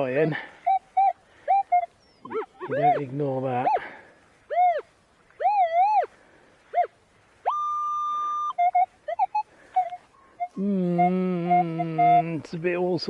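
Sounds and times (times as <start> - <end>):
metal detector steady tone: 0.7 - 3.9, 6.7 - 12.4
metal detector beeps: 1.0 - 3.9, 7.5 - 12.3.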